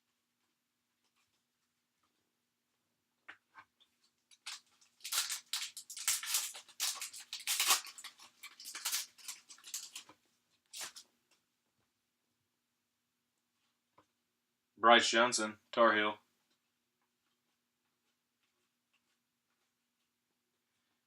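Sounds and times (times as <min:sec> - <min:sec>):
foil wrapper tearing and crinkling: 0:04.3 - 0:10.1, 0:10.7 - 0:11.0.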